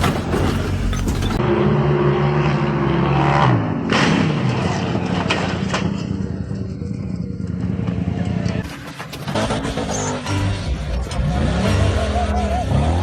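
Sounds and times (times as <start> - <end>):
terrain noise: 0.0 - 1.4.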